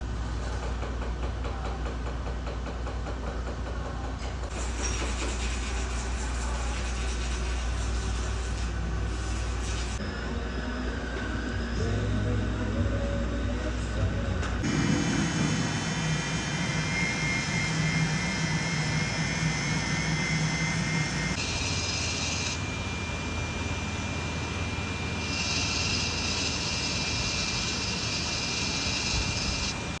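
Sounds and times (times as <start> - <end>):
workshop tool running: 0.0 - 30.0
high even whine: 10.0 - 30.0.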